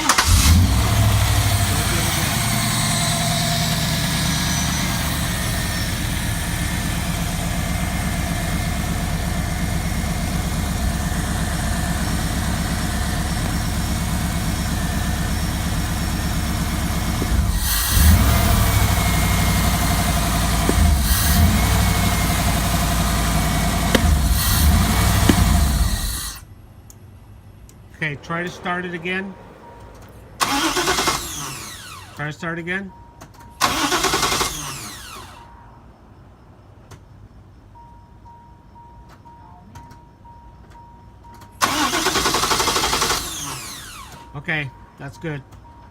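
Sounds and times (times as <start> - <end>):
engine running rough: 0.0 - 32.3
car engine idling: 0.0 - 32.9
sharp knocks: 23.9 - 26.0.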